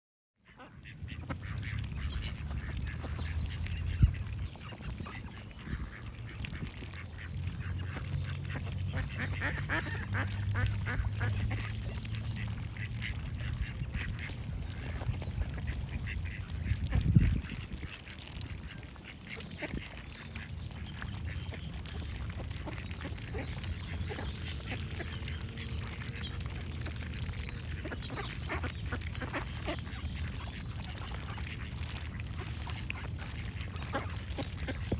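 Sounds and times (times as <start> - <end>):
duck quacking: 7.7 - 12.0
birds singing: 20.2 - 31.6.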